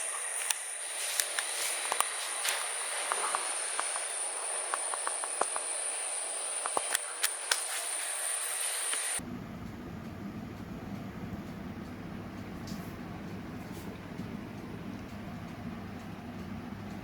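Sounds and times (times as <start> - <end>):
insect clicks and chirps: 0.0 - 9.2
insects shrilling: 0.0 - 9.2.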